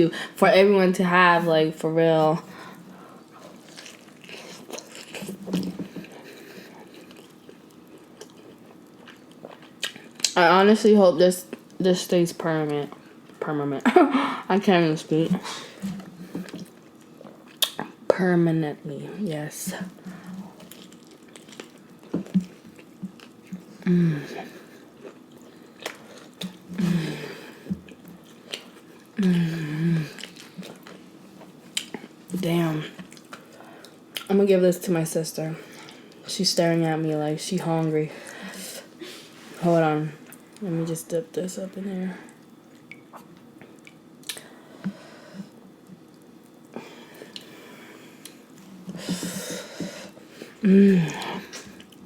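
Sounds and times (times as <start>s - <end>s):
chewing and wet squishing: 2.7s - 10.4s, 15.8s - 18.1s, 19.8s - 23.8s, 24.4s - 26.8s, 27.6s - 29.4s, 30.1s - 32.3s, 33.0s - 34.3s, 42.2s - 44.5s, 45.5s - 47.6s, 50.2s - 52.0s
close chewing and biting: 3.3s - 10.4s, 20.2s - 23.7s, 24.6s - 26.7s
person humming mmm: 23.8s - 24.6s, 29.2s - 30.3s, 50.6s - 51.7s.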